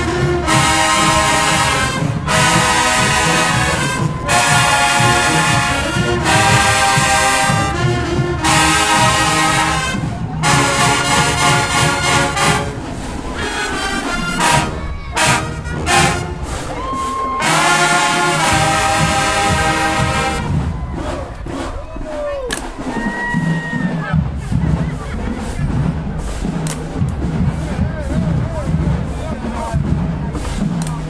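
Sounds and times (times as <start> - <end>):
brass section playing held chords: 0.0 - 21.8.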